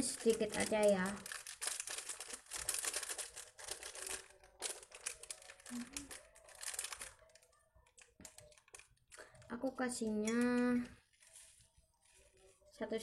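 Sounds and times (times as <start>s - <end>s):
plastic packet crinkling: 0.0s - 9.6s.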